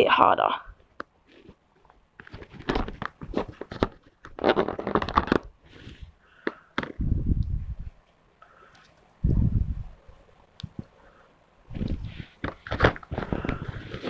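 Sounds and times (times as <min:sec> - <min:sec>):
low rumble of handling: 0:09.0 - 0:11.0, 0:11.6 - 0:14.0.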